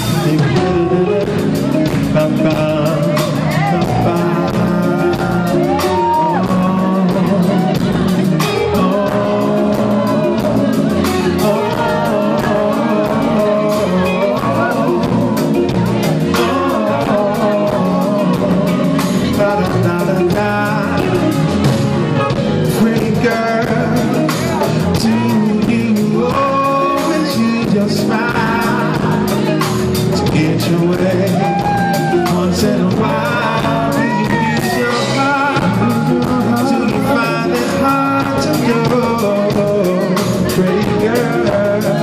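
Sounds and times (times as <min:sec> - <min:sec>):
live band playing: 0:00.0 - 0:42.0
person singing: 0:00.0 - 0:42.0.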